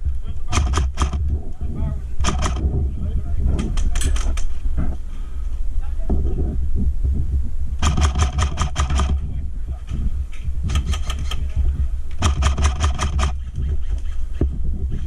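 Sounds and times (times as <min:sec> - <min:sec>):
steady low rumble: 0:00.0 - 0:15.0
airsoft gun firing bursts: 0:00.5 - 0:01.2, 0:02.2 - 0:02.7, 0:07.8 - 0:09.2, 0:10.7 - 0:11.4, 0:12.2 - 0:13.6.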